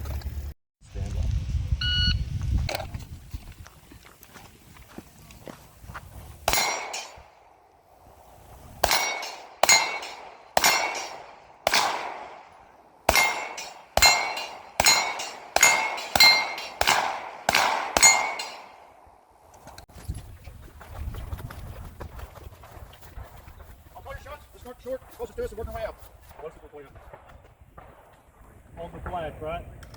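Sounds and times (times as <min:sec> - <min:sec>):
metallic ring of steel targets: 0:06.5 - 0:07.4, 0:08.8 - 0:12.4, 0:13.1 - 0:19.0
gunshots: 0:06.5 - 0:07.5, 0:08.8 - 0:18.9.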